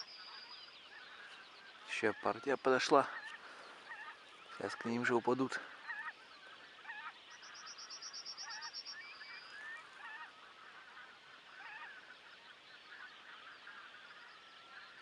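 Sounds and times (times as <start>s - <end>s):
geese honking: 0.0s - 15.0s.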